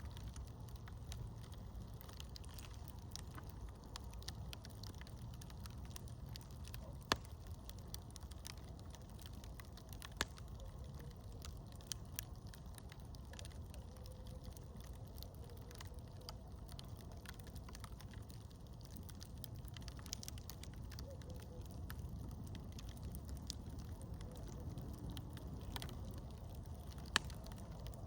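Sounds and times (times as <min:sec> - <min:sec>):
campfire crackling and popping: 0:00.0 - 0:28.0.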